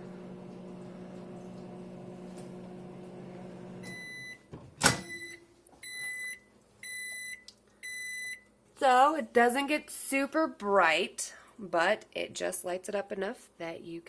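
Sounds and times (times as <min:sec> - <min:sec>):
microwave oven humming: 0:00.0 - 0:05.4
microwave beeps: 0:03.7 - 0:08.5
microwave door clicking open: 0:04.8 - 0:05.2.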